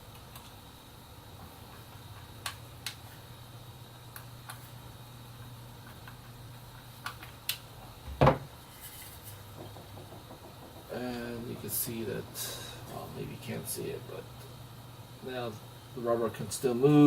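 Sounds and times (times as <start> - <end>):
faint steady low hum: 0.0 - 17.0
louder knock: 9.6 - 11.0.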